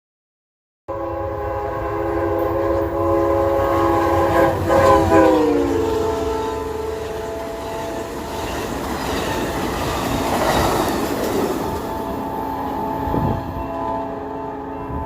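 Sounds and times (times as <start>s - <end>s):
train air horn chord: 0.9s - 8.5s, 11.9s - 15.0s
train rumbling: 0.9s - 15.0s.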